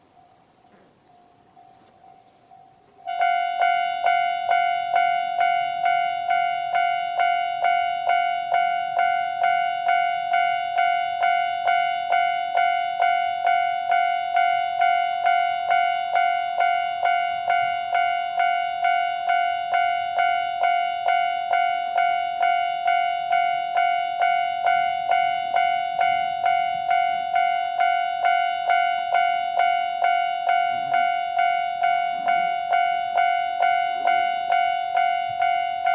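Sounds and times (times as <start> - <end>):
level-crossing bell alarm: 0.0 - 35.9.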